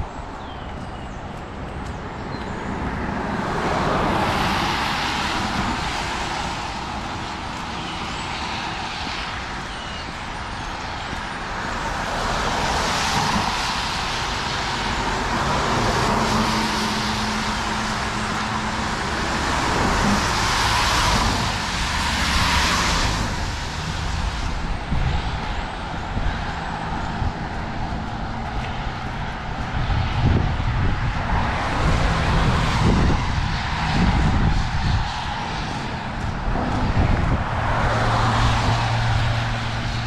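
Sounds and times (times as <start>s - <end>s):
tyres hissing on wet road: 3.5s - 29.2s, 31.3s - 40.0s
low engine drone: 14.4s - 40.0s.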